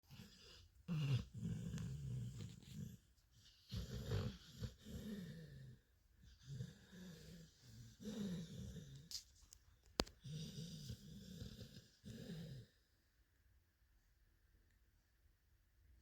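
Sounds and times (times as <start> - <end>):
dog snoring: 0.0 - 9.2, 10.0 - 12.8.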